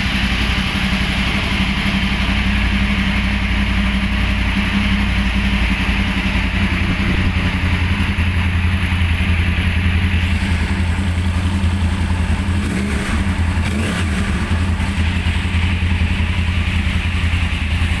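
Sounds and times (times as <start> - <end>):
motorcycle engine idling: 0.0 - 18.0.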